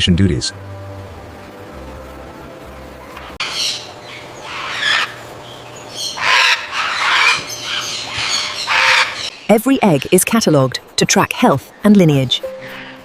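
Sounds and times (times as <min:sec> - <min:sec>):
macaws squawking: 0:03.4 - 0:10.4.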